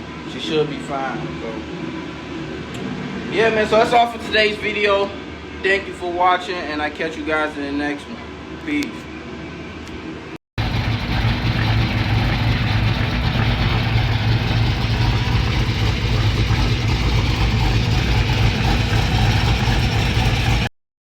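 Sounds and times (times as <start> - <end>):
car engine running loudly: 10.6 - 20.7.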